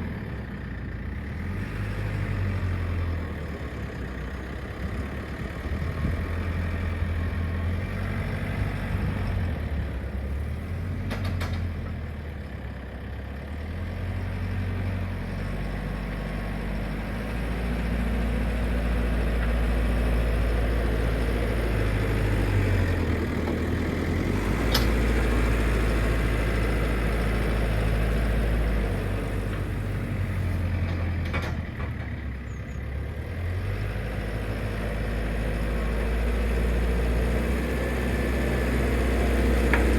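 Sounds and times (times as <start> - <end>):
backhoe diesel engine working: 0.0 - 39.9.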